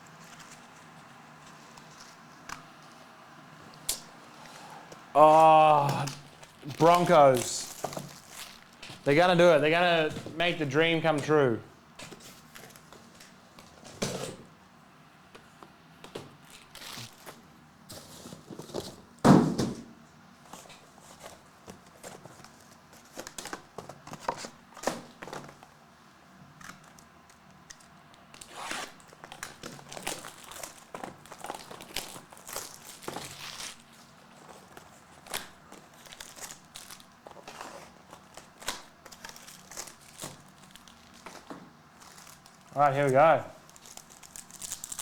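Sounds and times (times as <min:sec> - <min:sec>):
foil wrappers crinkling and tearing: 0:05.2 - 0:11.2, 0:16.4 - 0:17.5, 0:26.6 - 0:45.0.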